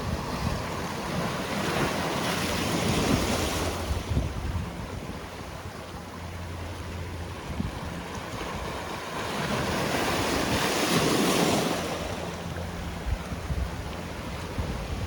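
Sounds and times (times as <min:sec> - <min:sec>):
wind buffeting microphone: 0:00.0 - 0:11.8, 0:12.5 - 0:15.0
sea waves breaking: 0:00.0 - 0:15.0.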